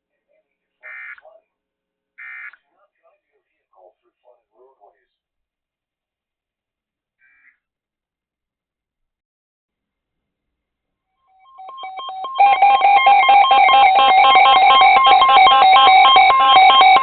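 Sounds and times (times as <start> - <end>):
electronic ringtone melody: 11.3 - 17.0.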